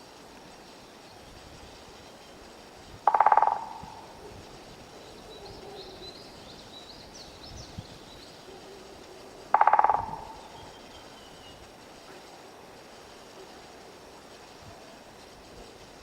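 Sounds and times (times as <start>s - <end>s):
woodpecker drumming: 3.0s - 4.3s, 9.4s - 10.8s.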